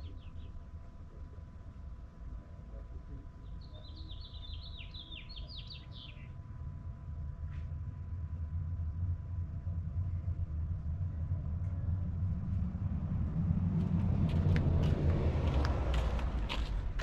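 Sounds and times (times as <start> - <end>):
vehicle engine rumbling: 6.4 - 17.0.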